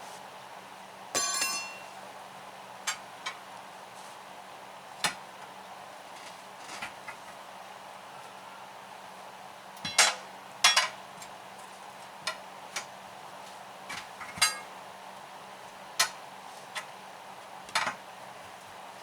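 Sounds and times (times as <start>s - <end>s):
tire bars clinking on steel rim: 1.2s - 2.0s, 14.4s - 14.7s.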